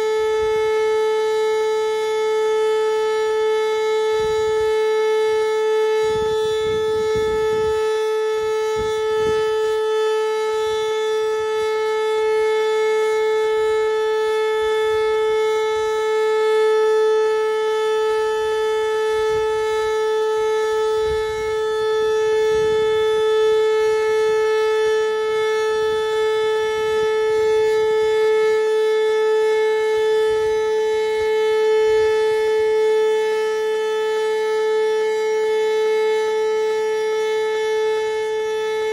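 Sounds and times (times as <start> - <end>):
warning siren steady tone: 0.0 - 38.9.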